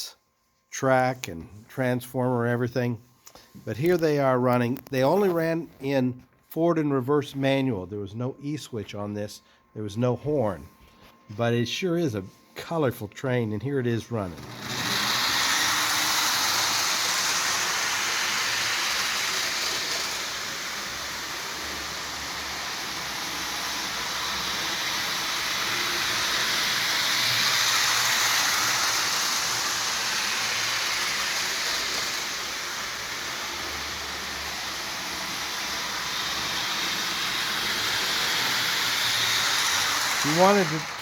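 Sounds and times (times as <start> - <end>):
toy train motor whirring: 14.1 - 41.0
wheels rattling on rails: 14.4 - 41.0.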